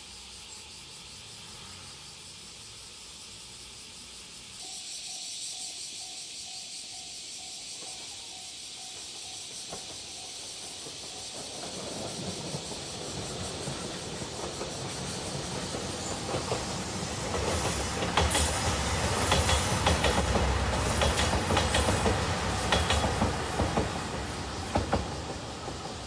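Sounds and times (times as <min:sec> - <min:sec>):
steady hiss: 0:00.0 - 0:26.0
level-crossing warning bell: 0:04.6 - 0:09.6
diesel train rumble: 0:07.2 - 0:26.0.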